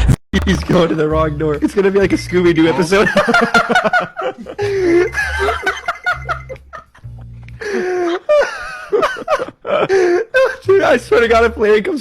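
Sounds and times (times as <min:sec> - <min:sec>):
background music with bass: 0:00.0 - 0:01.5
people laughing: 0:02.8 - 0:10.7.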